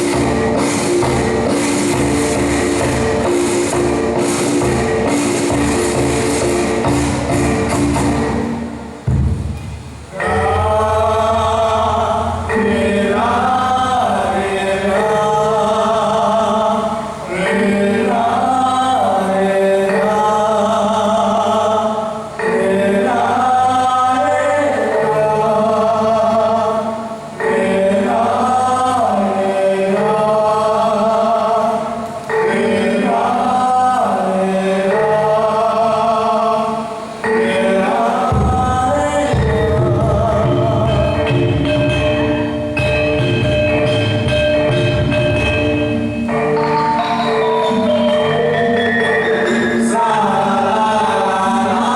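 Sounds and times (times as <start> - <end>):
dance music: 0.0 - 8.6, 42.0 - 51.9
group of voices singing: 10.1 - 42.0, 46.3 - 51.9.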